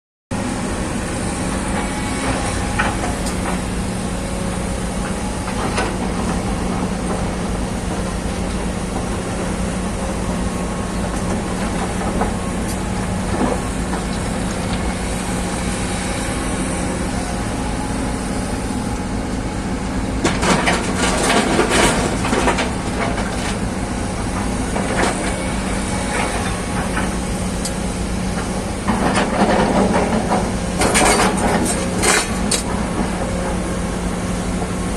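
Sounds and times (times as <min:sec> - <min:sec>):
excavator diesel engine running: 0:00.3 - 0:34.9.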